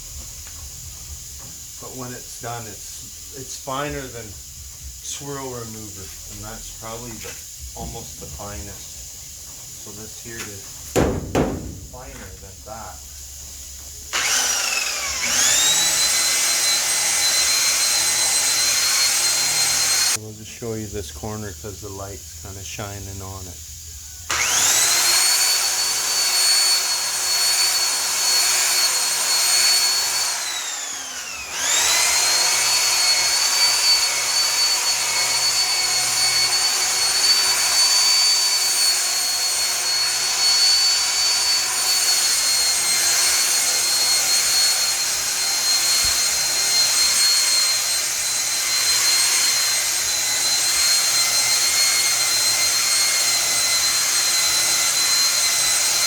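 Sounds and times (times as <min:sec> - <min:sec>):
electric polisher whining: 0:11.2 - 0:20.2, 0:24.3 - 0:56.0.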